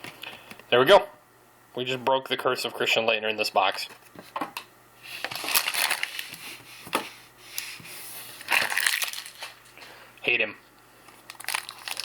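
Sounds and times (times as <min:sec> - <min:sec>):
cards rustling: 0:05.2 - 0:06.6, 0:08.4 - 0:09.7, 0:11.1 - 0:12.0.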